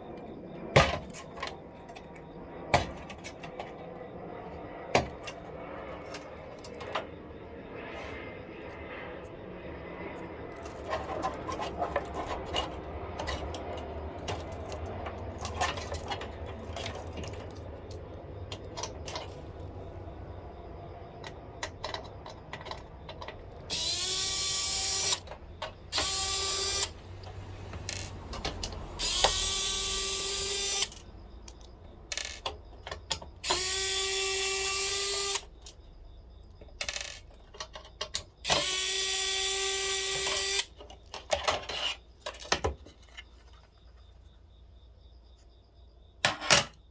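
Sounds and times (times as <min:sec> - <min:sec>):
electric screwdriver running: 0:23.7 - 0:25.2, 0:25.9 - 0:27.0, 0:29.0 - 0:31.0.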